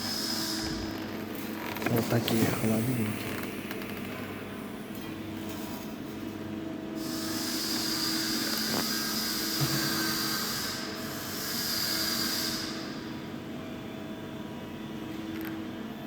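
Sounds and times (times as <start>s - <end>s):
welding hiss: 7.0s - 12.9s.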